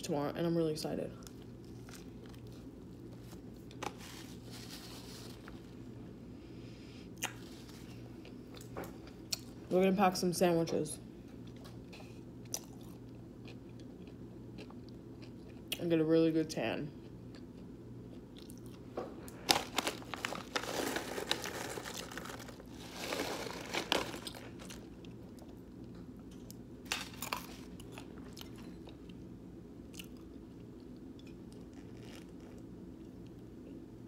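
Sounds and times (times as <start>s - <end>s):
chewing and biting sandwich: 29.9s - 33.2s.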